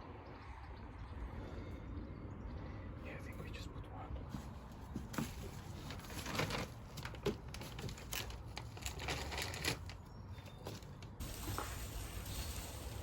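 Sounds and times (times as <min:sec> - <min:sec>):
packaging crinkling: 0:05.2 - 0:11.1.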